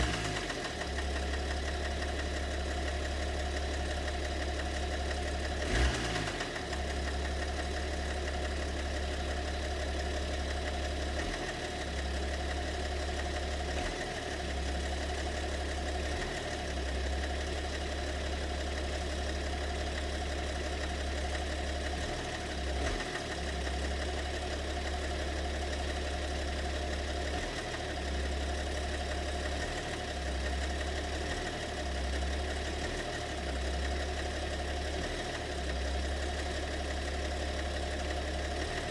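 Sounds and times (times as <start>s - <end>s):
diesel engine idling: 0.0s - 38.9s
engine knock: 0.0s - 38.9s.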